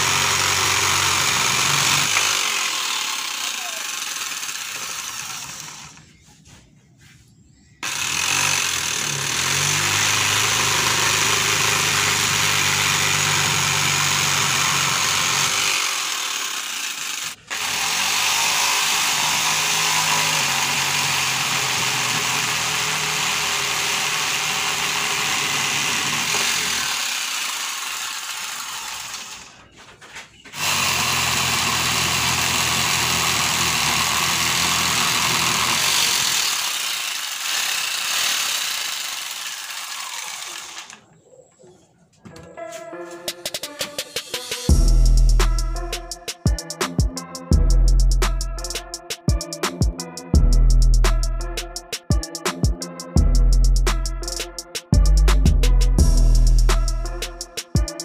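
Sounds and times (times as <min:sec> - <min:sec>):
drill-powered jigsaw running: 0:00.0 - 0:06.0, 0:07.8 - 0:29.6, 0:30.6 - 0:41.0.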